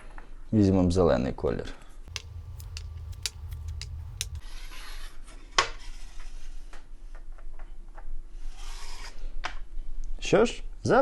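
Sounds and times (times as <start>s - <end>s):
dominoes clicking on a table: 2.1s - 4.4s
tiles rubbing: 2.1s - 4.4s.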